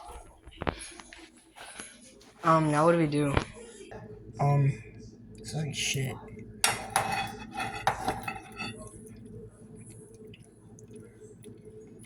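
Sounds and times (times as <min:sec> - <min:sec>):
dishes and cutlery clattering: 0:06.6 - 0:08.8.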